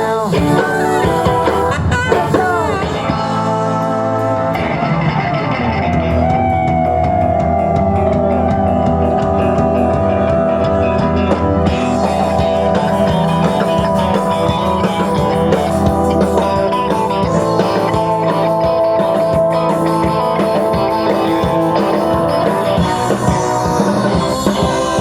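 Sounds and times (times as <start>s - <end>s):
electric guitar: 0.0s - 25.0s
live rock band playing: 0.0s - 25.0s
drum and cymbal hits: 11.3s - 25.0s.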